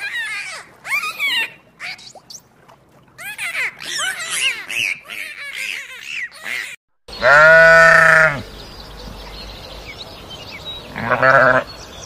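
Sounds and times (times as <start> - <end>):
animal bleating: 7.1 - 8.4, 10.9 - 11.7.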